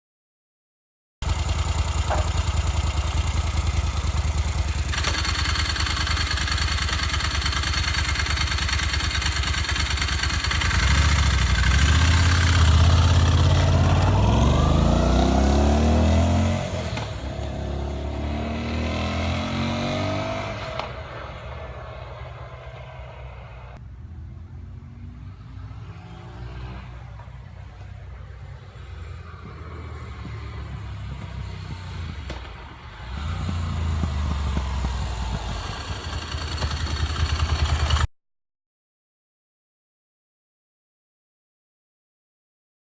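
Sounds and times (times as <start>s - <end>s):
motorcycle engine revving: 1.2s - 23.8s, 28.6s - 38.1s.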